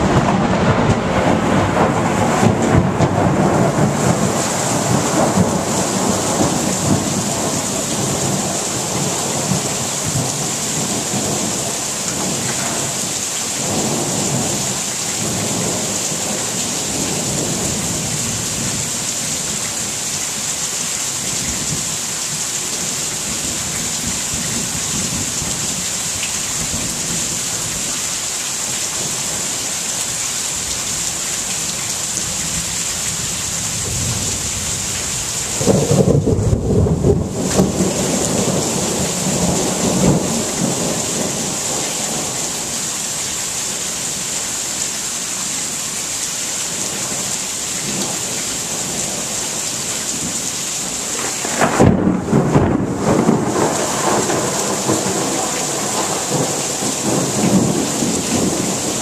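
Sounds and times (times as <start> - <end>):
thunder rumble: 0.0 - 13.0, 33.7 - 42.7, 51.2 - 59.0
steady rain: 0.0 - 59.0.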